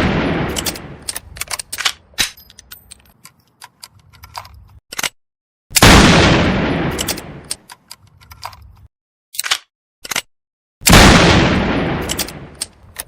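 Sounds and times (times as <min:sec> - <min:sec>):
rifle lever action clicking: 0:00.5 - 0:05.1, 0:12.0 - 0:13.0.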